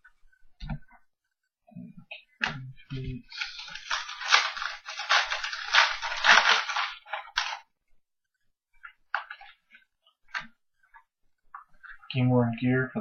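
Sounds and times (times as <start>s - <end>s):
plastic packaging crinkling: 3.3s - 7.6s.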